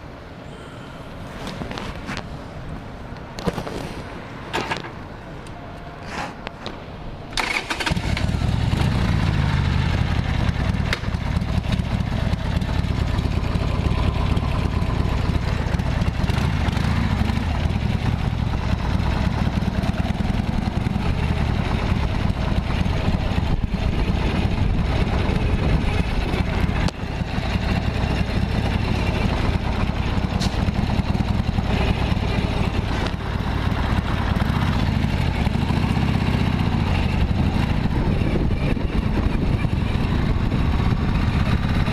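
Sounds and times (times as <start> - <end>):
motorcycle engine idling: 7.4 - 41.9.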